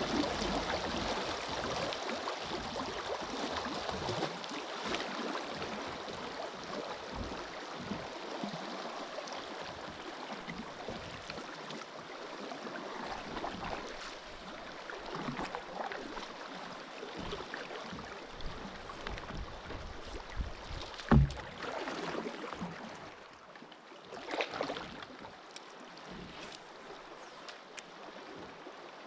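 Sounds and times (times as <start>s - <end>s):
water splashing around a kayak: 0.0s - 29.0s
sharp thump: 21.1s - 21.5s.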